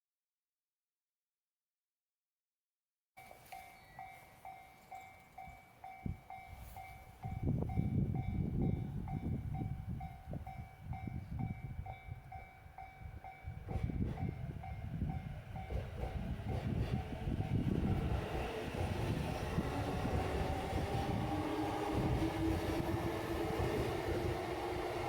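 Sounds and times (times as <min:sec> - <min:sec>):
level crossing warning bell ringing: 0:03.2 - 0:15.9
train rumble and wheel clacks: 0:05.4 - 0:25.0.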